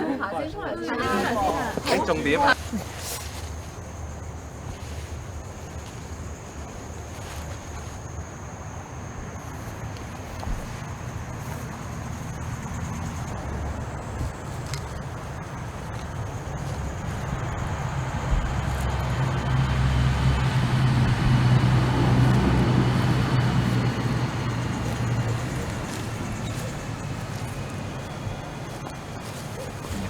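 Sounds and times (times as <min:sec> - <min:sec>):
vehicle engine rumbling: 0:01.0 - 0:30.0.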